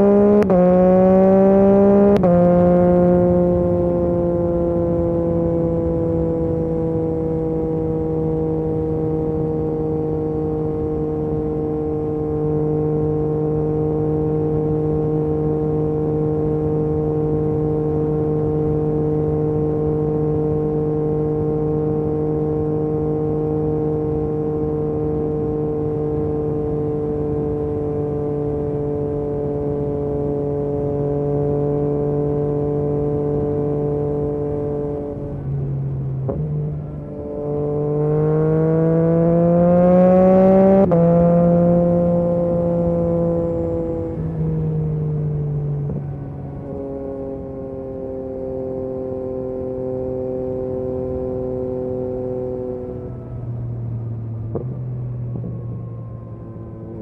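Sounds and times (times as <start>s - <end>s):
motorcycle engine at speed: 0.0s - 57.0s.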